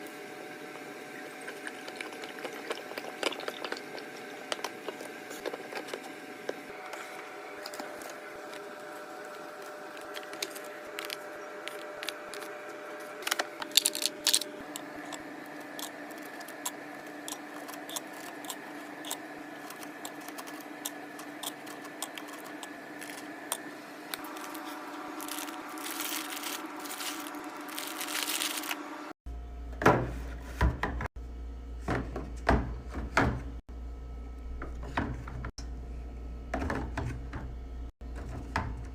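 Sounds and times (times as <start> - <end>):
fridge hum: 0.0 - 38.9
food packaging handled: 7.0 - 28.9.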